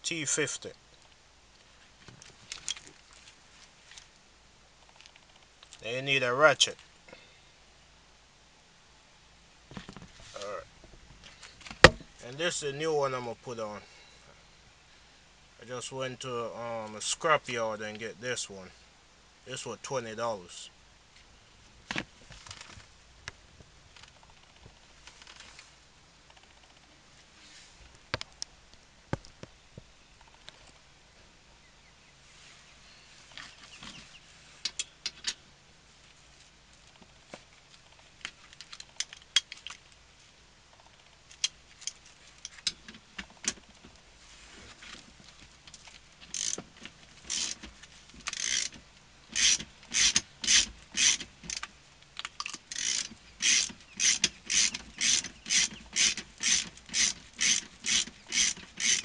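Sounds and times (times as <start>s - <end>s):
handling knocks: 11.8s - 12.2s
socket ratchet clicking: 46.3s - 46.6s, 47.3s - 47.6s, 48.3s - 48.8s, 49.4s - 59.0s.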